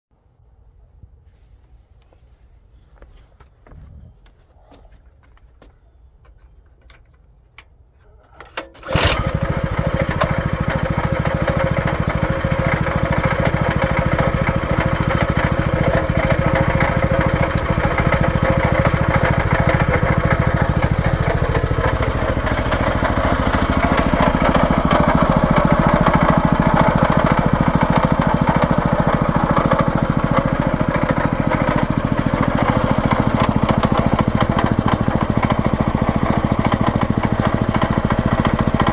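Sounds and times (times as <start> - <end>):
tiller engine running: 8.5 - 38.9.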